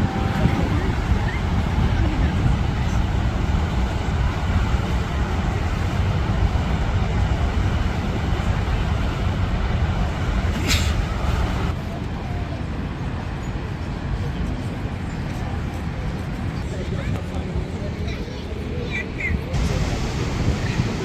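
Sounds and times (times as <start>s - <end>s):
waterfall roaring: 0.0s - 11.7s, 19.6s - 21.0s.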